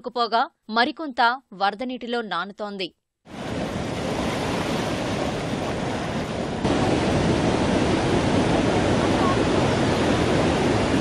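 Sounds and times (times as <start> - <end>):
flood water rushing: 3.3 - 11.0.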